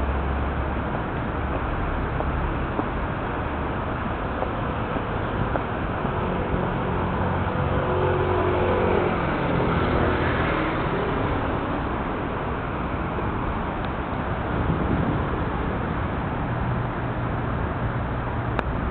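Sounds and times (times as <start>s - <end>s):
outdoor noise: 0.0s - 18.9s
vehicle passing by: 5.8s - 13.4s.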